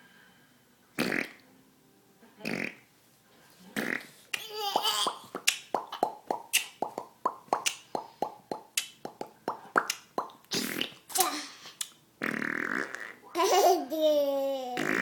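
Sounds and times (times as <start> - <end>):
sharp mouth pops: 5.4 - 11.0.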